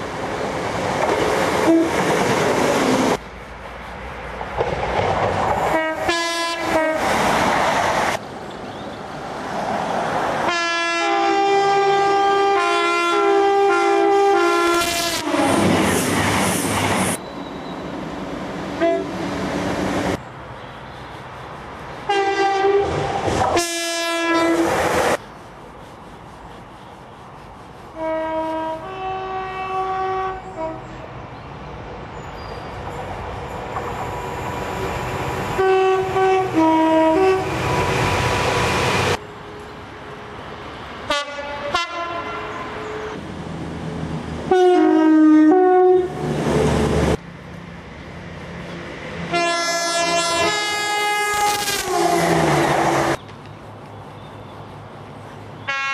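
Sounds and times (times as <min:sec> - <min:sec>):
train running on rails: 0:00.0 - 0:55.9
train two-tone horn: 0:01.6 - 0:02.0, 0:05.6 - 0:07.1, 0:10.5 - 0:15.7, 0:18.8 - 0:19.2, 0:22.1 - 0:24.8, 0:27.9 - 0:31.1, 0:35.5 - 0:37.6, 0:41.1 - 0:43.2, 0:44.5 - 0:46.3, 0:49.3 - 0:53.2, 0:55.6 - 0:55.9.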